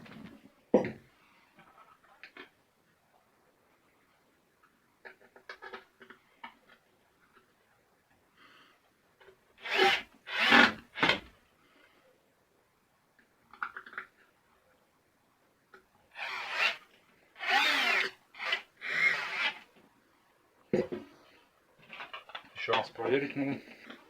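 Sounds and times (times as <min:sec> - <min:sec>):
cordless drill driving screws: 0:09.6 - 0:11.2, 0:16.2 - 0:16.8, 0:17.4 - 0:19.7.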